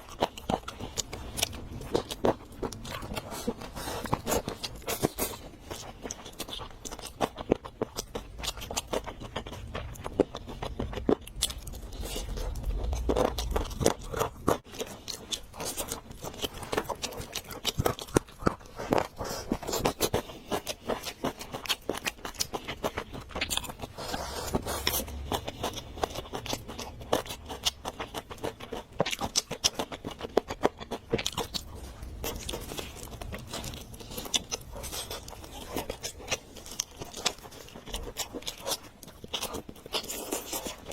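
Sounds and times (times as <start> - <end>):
chewing and biting food: 0.0 - 40.9
small scrapes: 23.7 - 26.4.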